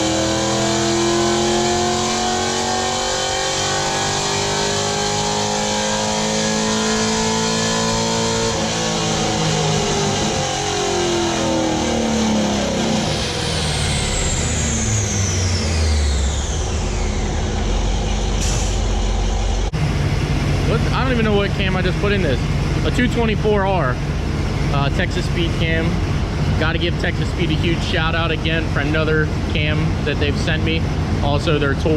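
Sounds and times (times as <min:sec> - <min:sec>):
car engine revving: 0:00.0 - 0:31.9
high whine sliding down in pitch: 0:00.0 - 0:31.9.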